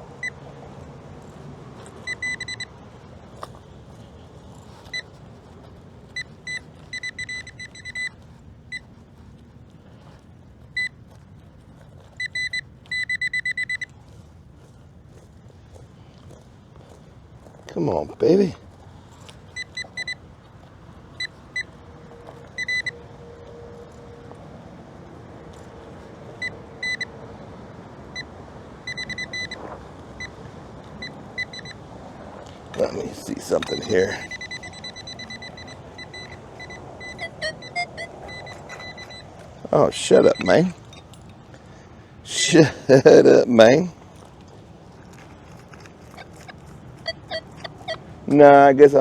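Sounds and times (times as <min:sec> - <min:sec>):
metal detector beeping: 0:00.0 - 0:00.5, 0:01.8 - 0:02.8, 0:04.0 - 0:05.3, 0:06.1 - 0:09.0, 0:10.0 - 0:11.2, 0:12.0 - 0:14.2, 0:17.7 - 0:20.3, 0:21.1 - 0:24.4, 0:26.3 - 0:27.2, 0:28.1 - 0:31.8, 0:32.4 - 0:44.3, 0:45.1 - 0:49.0.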